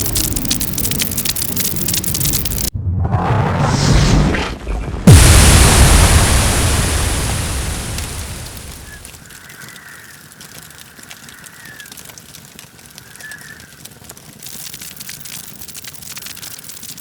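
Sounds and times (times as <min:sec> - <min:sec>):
faint scattered crackling: 0:00.0 - 0:02.7, 0:03.6 - 0:13.1
synthesized explosion boom: 0:02.0 - 0:09.2.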